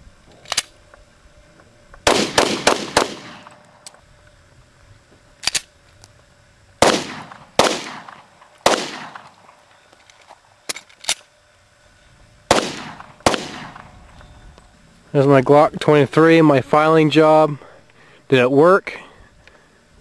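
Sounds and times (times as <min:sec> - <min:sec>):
pistol shots echoing: 0:02.1 - 0:03.6, 0:06.8 - 0:09.6, 0:12.5 - 0:14.0.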